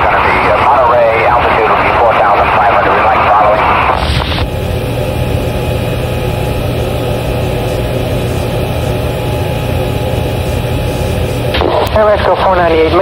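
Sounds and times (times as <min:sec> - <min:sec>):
low droning hum: 0:00.0 - 0:13.0.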